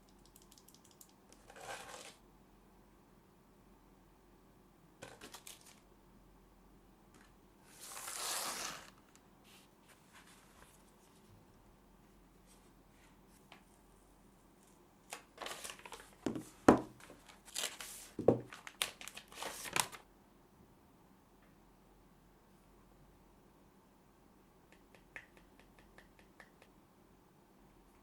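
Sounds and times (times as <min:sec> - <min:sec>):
packaging crinkling: 0:05.0 - 0:05.8, 0:17.1 - 0:20.0
packaging rustling: 0:05.0 - 0:05.8, 0:17.0 - 0:20.0
knocks and taps: 0:24.7 - 0:26.8.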